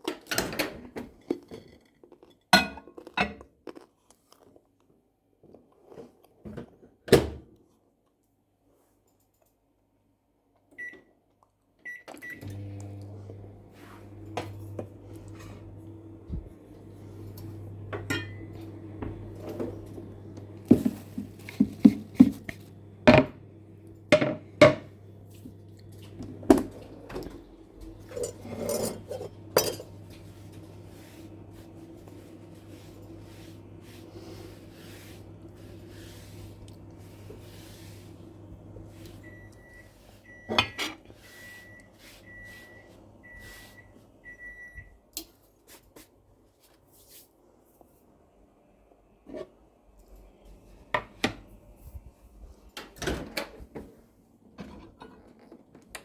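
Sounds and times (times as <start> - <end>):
microwave keypad beeping: 11.9 - 12.5, 39.1 - 45.0
microwave oven humming: 12.2 - 45.0
dishes and utensils clinking: 18.0 - 18.6, 28.0 - 30.6.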